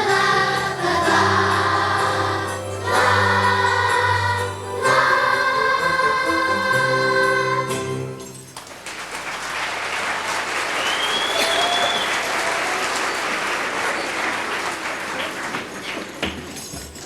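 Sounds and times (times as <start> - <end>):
audience applauding: 8.6 - 16.2.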